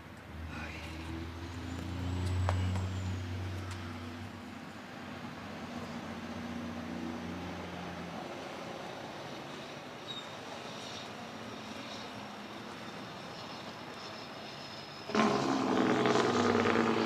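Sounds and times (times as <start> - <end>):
distant engine drone: 0.0 - 17.0
faint high chirp: 10.0 - 10.4.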